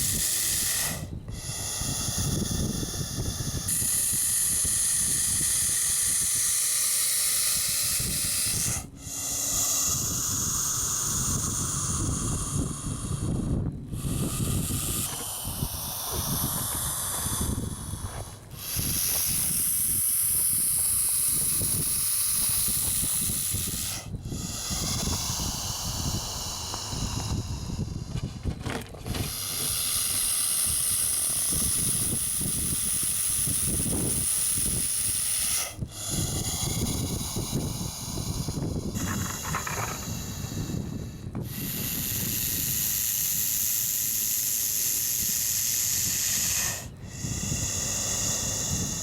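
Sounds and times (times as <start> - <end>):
snake hissing: 0.0 - 49.0
wind rumble on microphone: 0.0 - 49.0.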